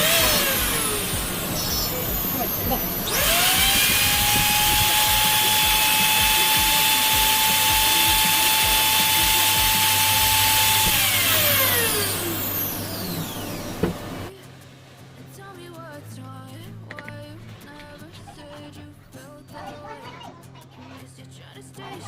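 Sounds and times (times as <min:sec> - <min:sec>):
angle grinder whining: 0:00.0 - 0:14.3.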